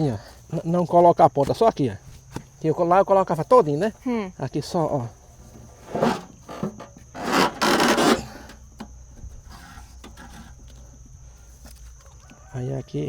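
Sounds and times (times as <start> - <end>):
rope rasping against wood: 5.8 - 8.6.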